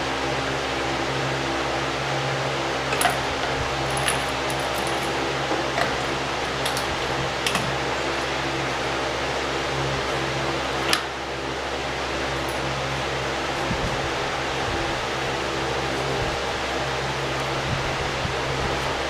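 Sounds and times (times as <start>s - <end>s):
fan humming: 0.0s - 19.0s
metal tools clinking on car parts: 2.9s - 7.7s.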